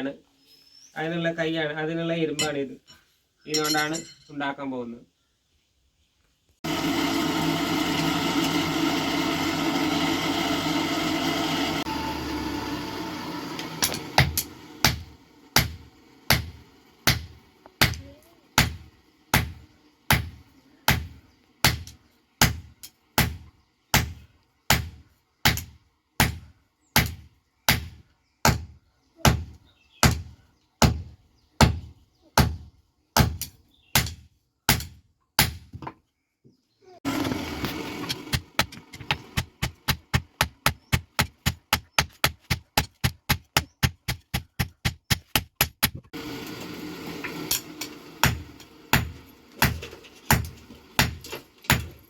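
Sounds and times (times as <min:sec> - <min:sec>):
hammer striking iron on anvil: 0:03.5 - 0:04.3, 0:13.8 - 0:18.0, 0:18.6 - 0:22.6, 0:48.2 - 0:51.9.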